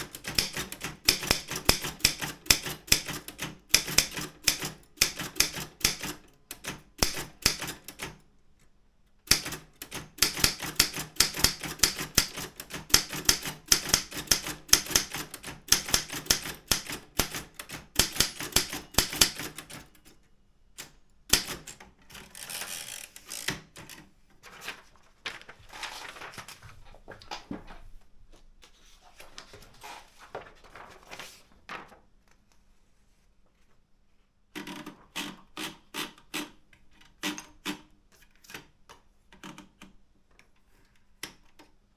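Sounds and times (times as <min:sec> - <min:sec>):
typewriter keystrokes: 0:00.0 - 0:08.2, 0:09.3 - 0:20.2, 0:20.8 - 0:24.8.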